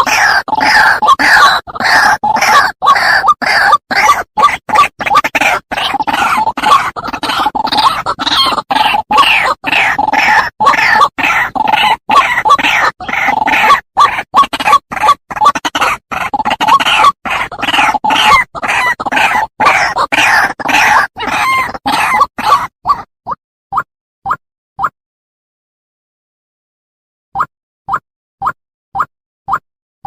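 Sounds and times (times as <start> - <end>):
bird harsh repeated calls: 0.0 - 23.9.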